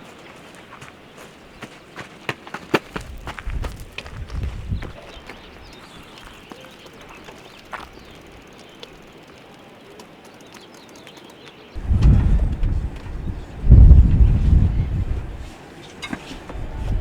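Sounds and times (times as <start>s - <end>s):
wind buffeting microphone: 2.8s - 9.2s, 11.7s - 17.0s
faint bird calls: 4.0s - 16.8s
light clicks: 5.3s - 13.3s.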